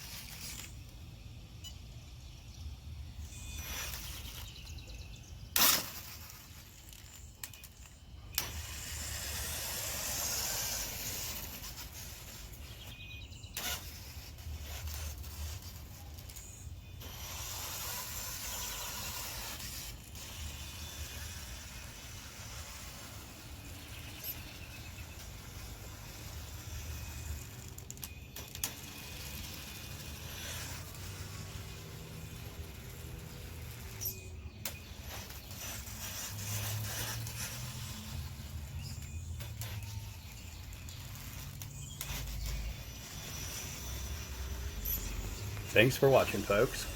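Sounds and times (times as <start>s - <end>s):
rc truck motor hissing: 0.0s - 46.9s.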